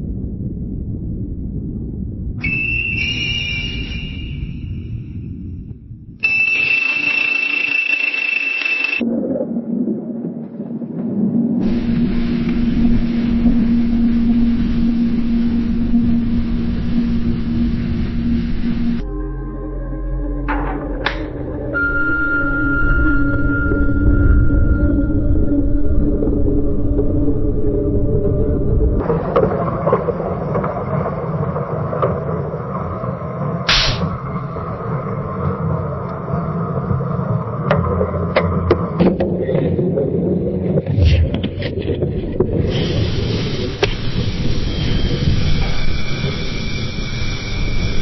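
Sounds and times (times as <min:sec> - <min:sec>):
rumbling underwater noise: 0:00.0 - 0:07.3, 0:09.0 - 0:48.0
echoing pitched tone: 0:02.4 - 0:05.3, 0:06.2 - 0:09.1, 0:11.6 - 0:28.6
steady low hum: 0:11.2 - 0:39.3.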